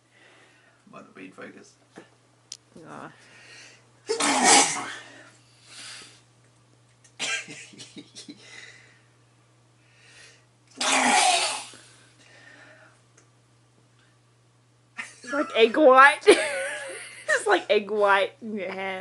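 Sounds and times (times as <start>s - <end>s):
man sneezing: 4.1s - 5.1s, 10.8s - 11.8s.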